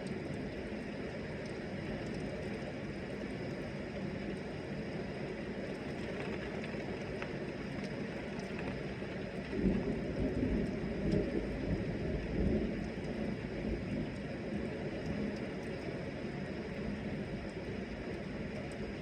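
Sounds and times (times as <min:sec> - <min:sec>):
heavy rain: 0:00.0 - 0:19.0
low rumble of thunder: 0:08.1 - 0:15.5.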